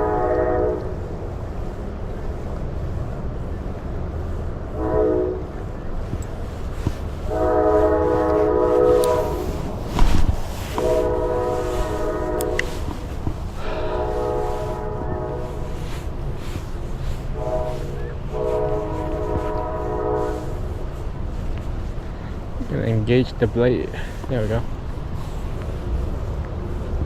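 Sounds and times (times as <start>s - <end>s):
train horn blasts: 0.0s - 1.2s, 4.7s - 5.8s, 7.2s - 21.1s.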